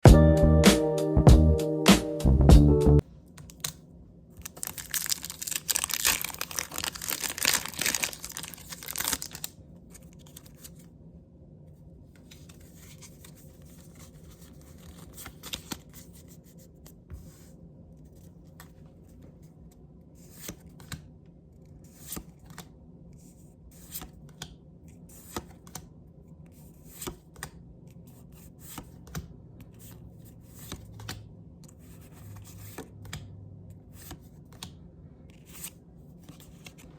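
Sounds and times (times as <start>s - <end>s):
foil wrapper tearing and crinkling: 4.4s - 9.5s.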